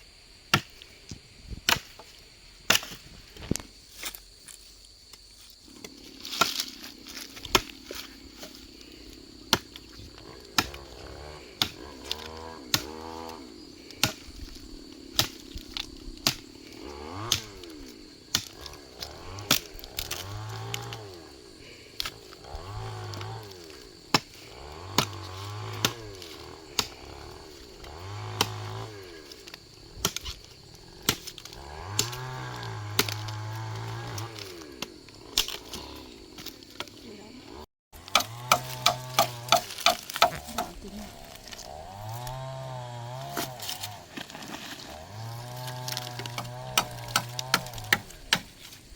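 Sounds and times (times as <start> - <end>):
sharp chopping blows: 9.5 - 13.4, 17.1 - 17.7, 22.0 - 29.3, 31.0 - 36.0, 38.0 - 44.0, 45.0 - 48.6.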